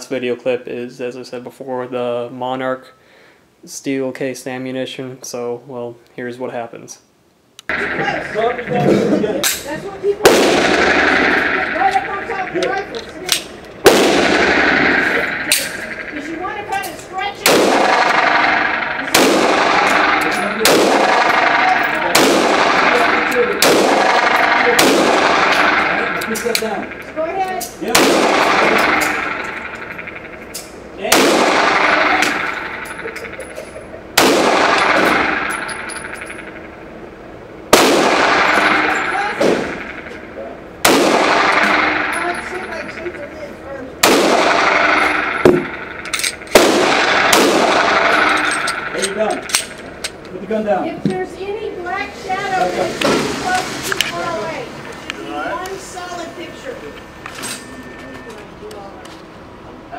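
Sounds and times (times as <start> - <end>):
gunshots with echoing ring: 7.7 - 50.2.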